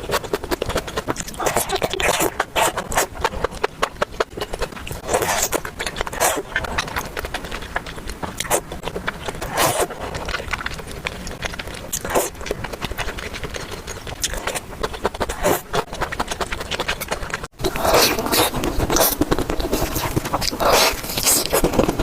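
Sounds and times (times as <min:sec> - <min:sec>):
close chewing: 0:00.0 - 0:22.0.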